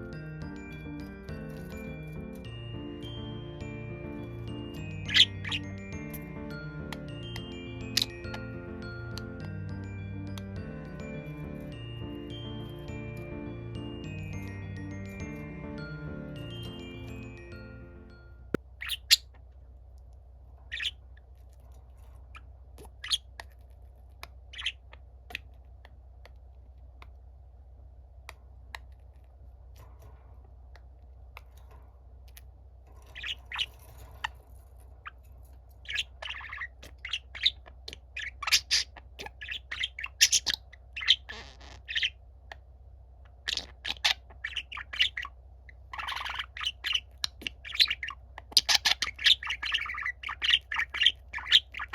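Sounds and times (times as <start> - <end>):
budgerigars chirping and warbling: 0.0 - 18.1, 18.7 - 19.5, 20.7 - 23.7, 24.4 - 25.6, 33.0 - 42.6, 43.3 - 51.9.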